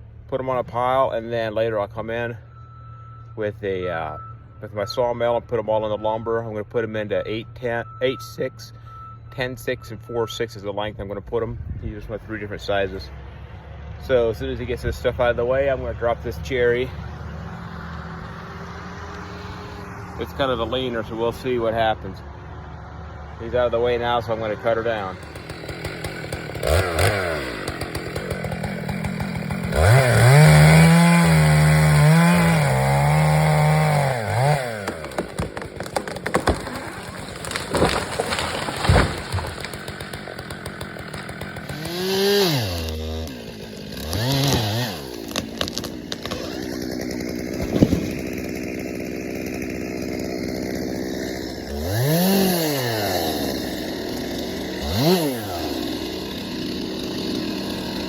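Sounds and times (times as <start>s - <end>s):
chainsaw revving and idling: 14.0s - 58.0s
wood cracking: 24.9s - 58.0s.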